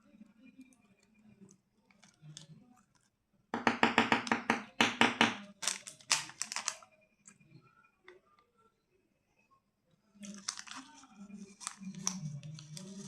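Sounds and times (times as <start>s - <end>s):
candy wrapper crackling: 5.6s - 6.8s, 10.2s - 13.0s.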